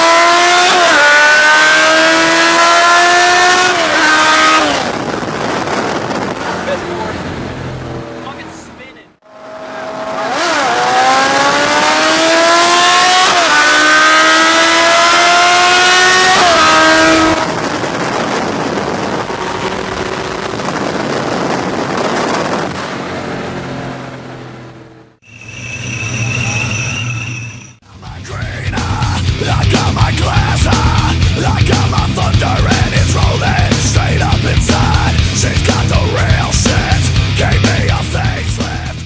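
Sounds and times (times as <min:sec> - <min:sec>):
race car engine accelerating: 0:00.0 - 0:08.7, 0:09.3 - 0:39.0
wind and road noise: 0:00.0 - 0:39.0
high-pitched whine: 0:25.2 - 0:29.7.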